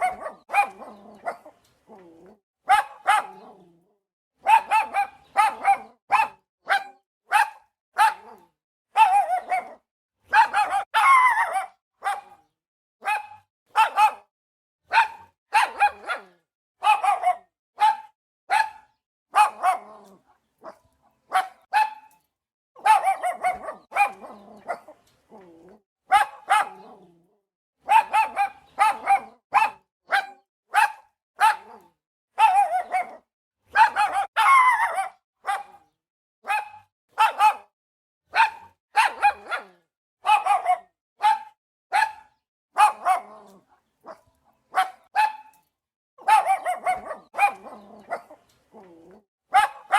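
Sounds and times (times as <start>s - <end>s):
dog barking: 0.0s - 1.6s, 2.6s - 3.7s, 4.4s - 25.5s, 26.1s - 27.1s, 27.8s - 45.6s, 46.2s - 49.9s.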